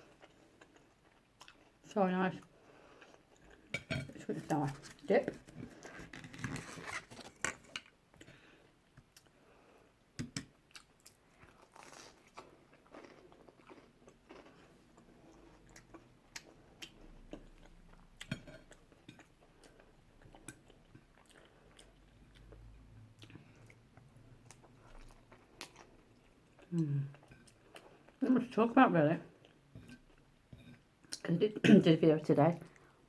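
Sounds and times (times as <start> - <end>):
person chewing crisp food: 0.0 - 1.8, 2.4 - 3.7, 10.6 - 28.2.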